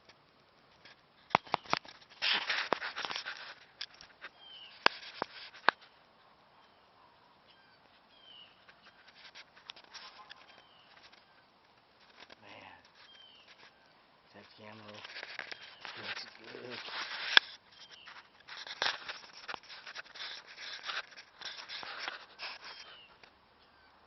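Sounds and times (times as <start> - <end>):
handling rustle: 0.0 - 6.0, 7.8 - 23.3
faint bird chirps: 4.2 - 4.9, 5.8 - 16.8, 17.6 - 18.4, 21.4 - 24.0.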